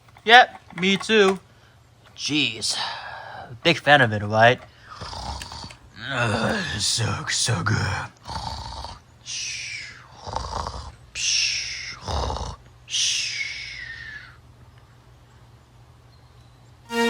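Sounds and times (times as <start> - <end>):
person making breathy noises: 4.8 - 6.9.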